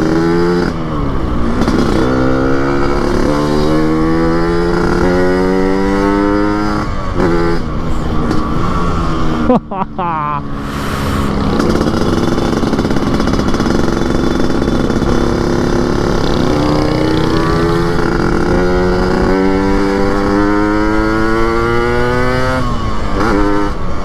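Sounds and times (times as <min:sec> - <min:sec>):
raspy two-stroke motorcycle accelerating: 0:00.0 - 0:24.0.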